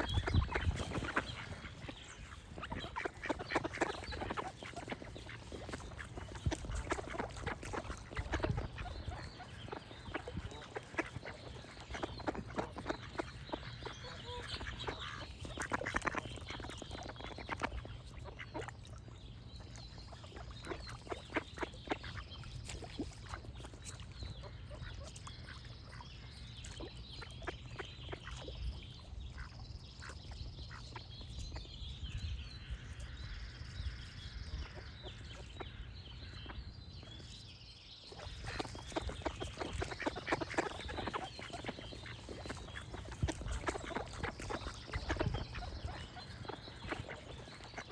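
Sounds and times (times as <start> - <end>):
ducks quacking: 0.0 - 18.8, 38.2 - 47.9.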